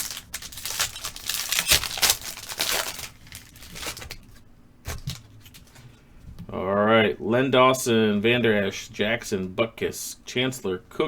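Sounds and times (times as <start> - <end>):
foil wrapper tearing and crinkling: 0.0 - 5.8.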